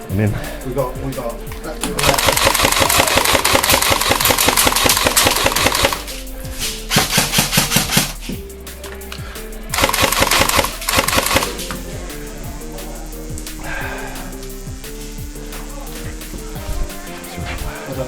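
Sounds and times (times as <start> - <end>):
background music: 0.0 - 18.0
airsoft gun firing bursts: 2.0 - 6.1, 6.9 - 8.2, 9.8 - 11.6.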